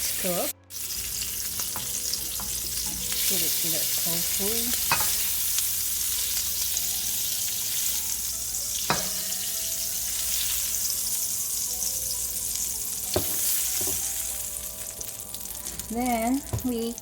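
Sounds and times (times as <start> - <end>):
shrimp sizzling in oil: 0.0 - 17.0
utensil knocking against wok: 8.9 - 9.3.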